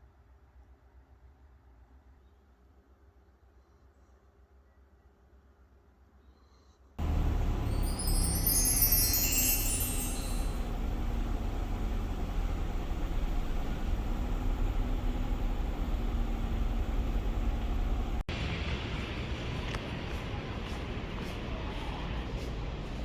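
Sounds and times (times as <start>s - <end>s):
high bell-like chimes: 7.0s - 12.4s
low rumble: 7.0s - 20.6s.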